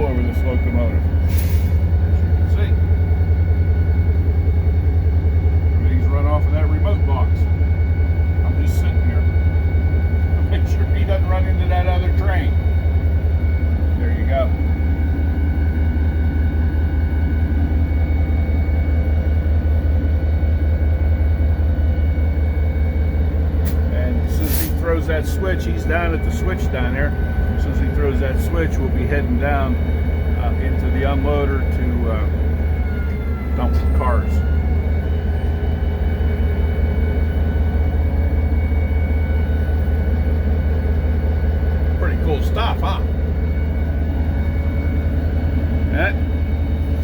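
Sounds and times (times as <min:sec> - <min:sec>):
faint steady high tones: 0:00.0 - 0:19.2, 0:24.0 - 0:47.0
diesel locomotive engine running: 0:00.0 - 0:47.0
high whine: 0:00.0 - 0:47.0.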